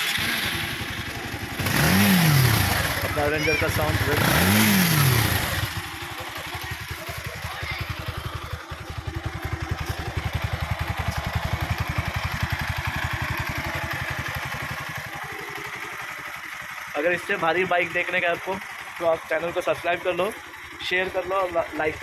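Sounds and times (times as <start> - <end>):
motorcycle engine idling: 0.0 - 22.0.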